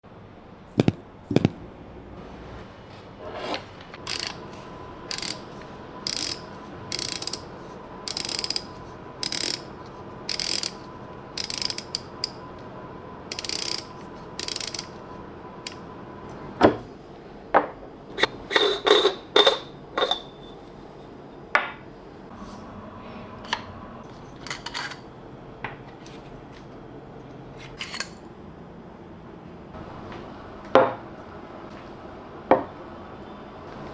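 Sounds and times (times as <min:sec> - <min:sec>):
coffee grinder clicks: 0:04.0 - 0:04.4, 0:05.1 - 0:05.4, 0:06.1 - 0:07.4, 0:08.1 - 0:09.7, 0:10.3 - 0:10.8, 0:11.4 - 0:12.4, 0:13.3 - 0:14.9
hand grinder rasping: 0:04.0 - 0:04.4, 0:05.1 - 0:05.4, 0:06.1 - 0:07.4, 0:08.1 - 0:09.7, 0:10.3 - 0:10.8, 0:11.4 - 0:12.3, 0:13.3 - 0:14.9.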